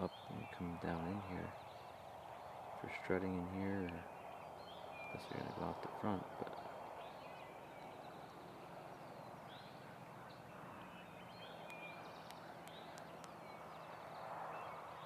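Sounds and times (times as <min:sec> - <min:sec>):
faint low hum: 0:00.0 - 0:15.0
soft steady rush: 0:00.0 - 0:15.0
songbird chirps: 0:00.0 - 0:15.0
light clicks: 0:11.6 - 0:13.5.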